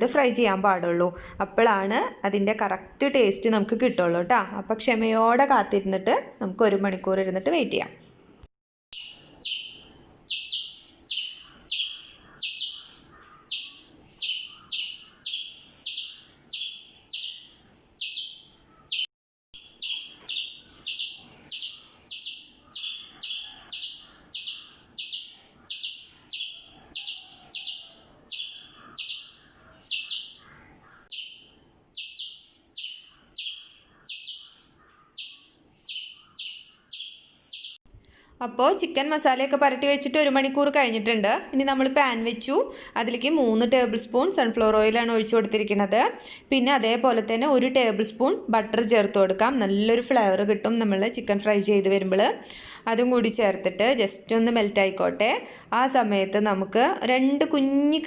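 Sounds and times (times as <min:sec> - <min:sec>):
bird chirping: 0:08.9 - 0:38.2.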